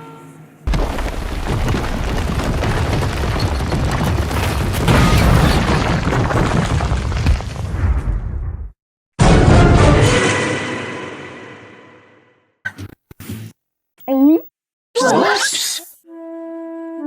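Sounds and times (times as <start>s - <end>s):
explosion boom with crackling rumble: 0.7s - 10.1s.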